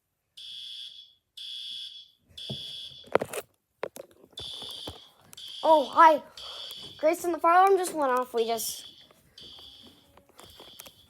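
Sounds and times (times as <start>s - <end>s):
fire alarm high-pitched beeps: 0.4s - 3.2s, 4.4s - 7.2s, 8.4s - 11.0s.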